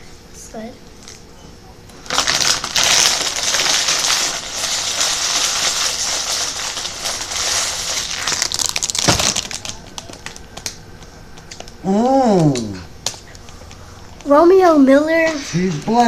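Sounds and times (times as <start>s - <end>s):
foil snack bag crinkling: 2.0s - 11.8s.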